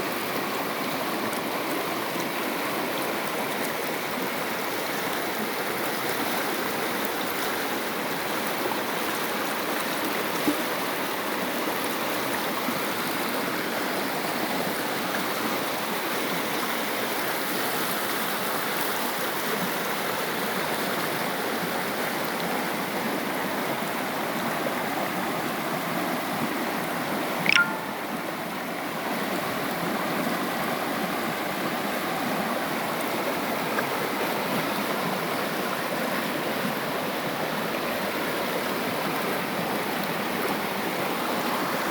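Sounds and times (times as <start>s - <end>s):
brief click: 27.5s - 28.0s
running water rushing: 27.5s - 28.1s.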